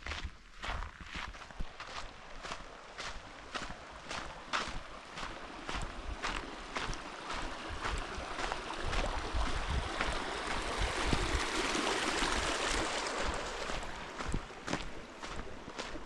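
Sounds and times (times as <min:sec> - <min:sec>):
footsteps crunching on rough ground: 0:00.0 - 0:16.0
wind rushing on microphone: 0:07.9 - 0:14.4.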